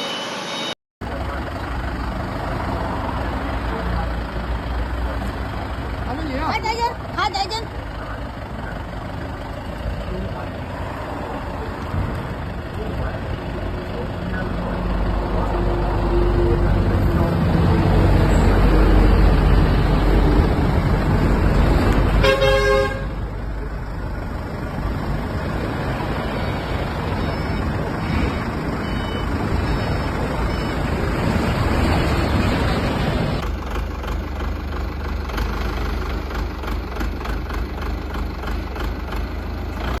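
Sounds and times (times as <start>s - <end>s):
baler machinery noise: 0.0s - 40.0s
short horn toot: 22.2s - 23.2s.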